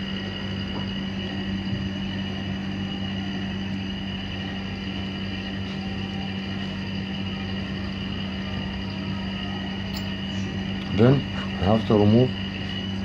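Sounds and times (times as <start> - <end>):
machine hum: 0.0 - 13.0.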